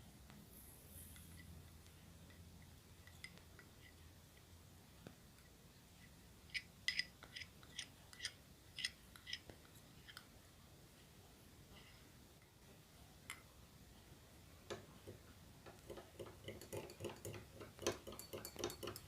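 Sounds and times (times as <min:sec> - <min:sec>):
spoon clinking against glass: 0:16.1 - 0:19.0.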